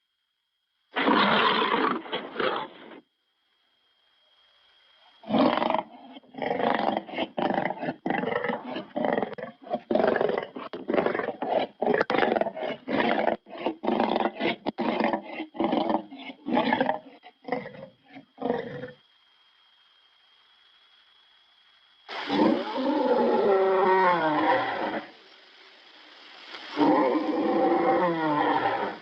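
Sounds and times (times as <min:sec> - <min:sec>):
lion growling: 0:05.3 - 0:19.0.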